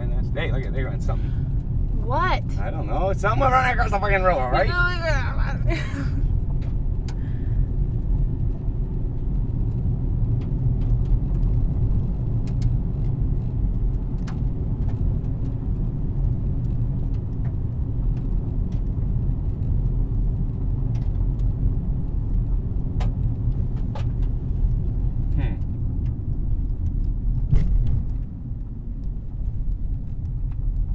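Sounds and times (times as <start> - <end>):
car cabin rumble: 0.0 - 30.9.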